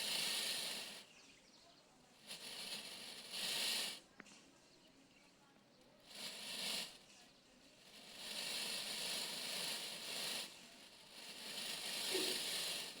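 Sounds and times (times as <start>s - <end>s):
peacock tail feathers rattling: 8.0s - 13.0s.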